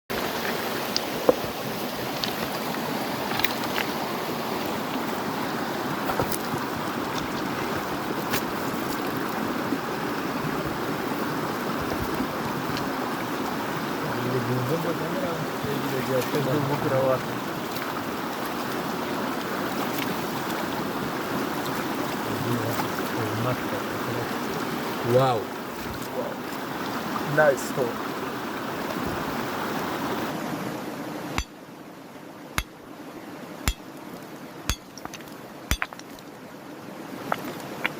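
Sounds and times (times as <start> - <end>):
water rushing over rocks: 0.1 - 31.8, 32.4 - 37.9
rock being struck: 34.7 - 36.2.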